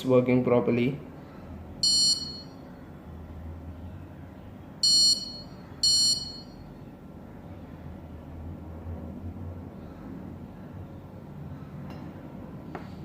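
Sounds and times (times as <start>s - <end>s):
high-pitched buzzer beeps: 1.8s - 2.6s, 4.8s - 6.6s.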